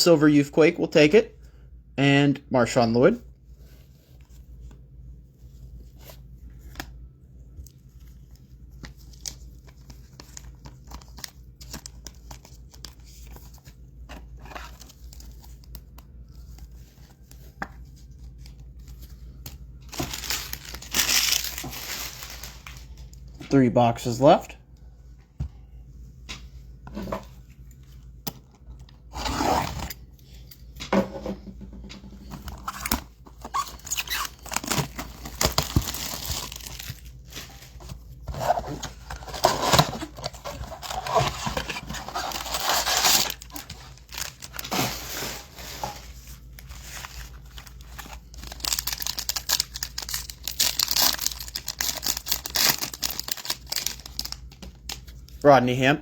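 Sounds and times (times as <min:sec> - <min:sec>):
cardboard and wrappers tearing: 0:19.9 - 0:22.9, 0:32.4 - 0:46.0, 0:46.6 - 0:54.5.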